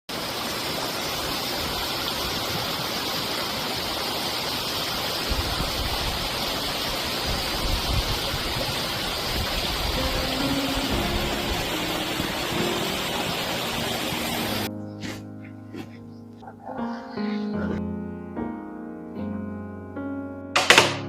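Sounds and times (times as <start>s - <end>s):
rushing outdoor noise: 0.1s - 15.2s.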